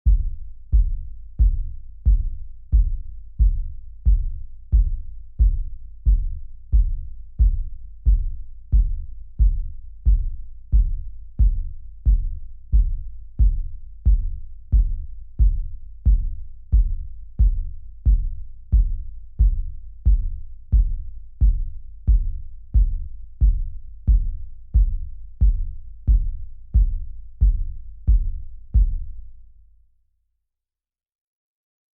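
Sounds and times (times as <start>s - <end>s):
kick drum thuds: 0.0s - 29.2s.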